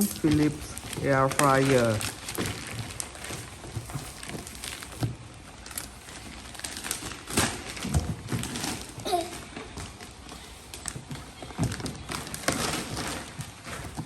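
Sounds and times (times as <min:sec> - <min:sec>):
packaging rustling: 0:00.0 - 0:14.0.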